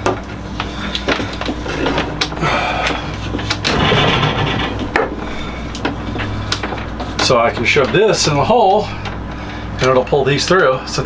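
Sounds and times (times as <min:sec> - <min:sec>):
clicks and knocks of handling: 0:00.0 - 0:08.2
steady low hum: 0:00.0 - 0:11.0
tape pulled off roll: 0:00.6 - 0:07.4.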